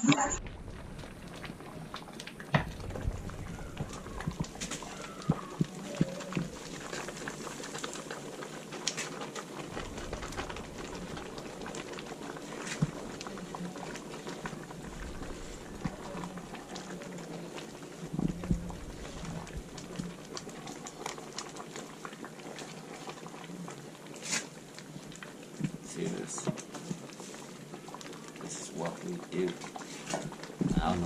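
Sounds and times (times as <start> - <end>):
bubbling hiss: 0.0 - 31.0.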